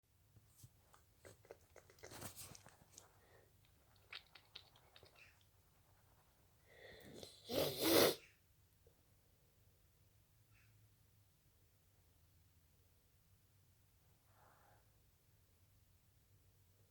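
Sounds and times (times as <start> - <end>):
person sniffling: 6.7 - 8.2.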